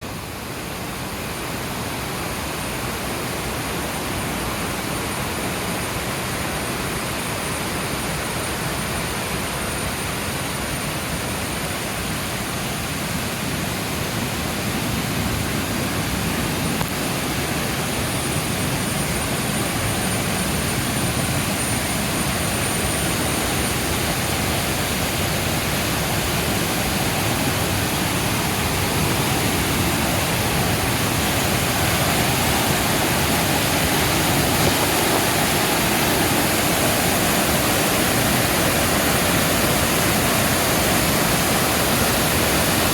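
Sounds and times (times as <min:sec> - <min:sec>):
waterfall roaring: 0:00.0 - 0:42.9
high thin whine: 0:15.2 - 0:42.9.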